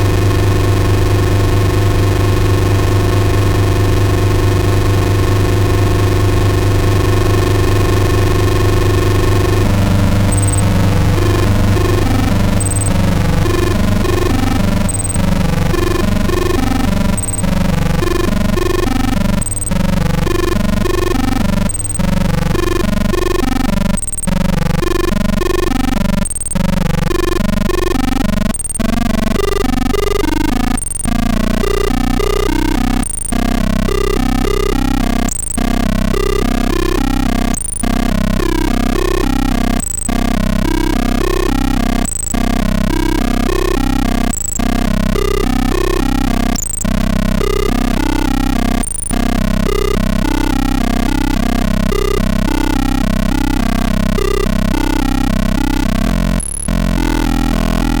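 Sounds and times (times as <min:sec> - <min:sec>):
low synthesizer drone: 0:00.0 - 0:58.0
pulsing stuttering texture: 0:00.0 - 0:58.0
high electronic blip: 0:06.4 - 0:58.0.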